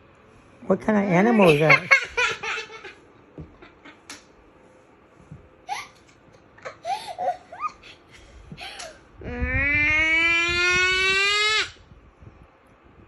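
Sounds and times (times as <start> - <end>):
small child squealing and giggling: 9.2 - 11.8.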